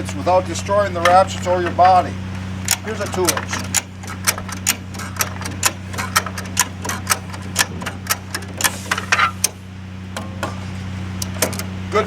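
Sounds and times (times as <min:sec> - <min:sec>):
steady low hum: 0:00.0 - 0:12.0
ratchet strap clicking: 0:02.6 - 0:09.6.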